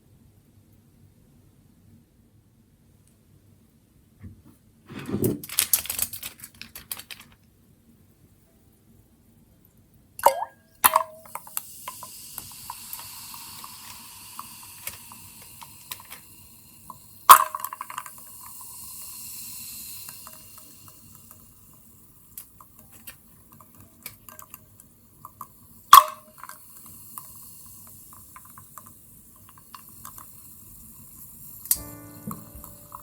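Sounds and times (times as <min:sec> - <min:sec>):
carbonated water fizzing: 0:10.2 - 0:22.7, 0:25.2 - 0:31.8.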